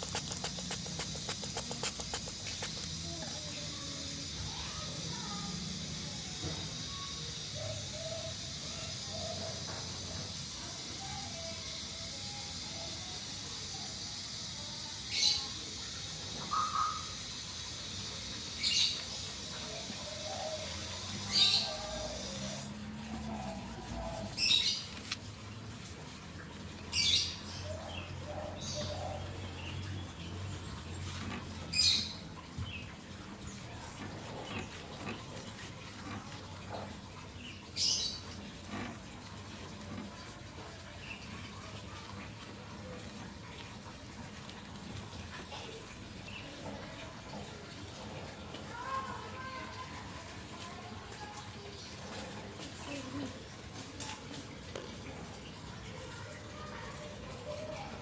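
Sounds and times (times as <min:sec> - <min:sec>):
spray bottle hissing bursts: 0:00.0 - 0:22.9
birds chirping: 0:16.3 - 0:22.7.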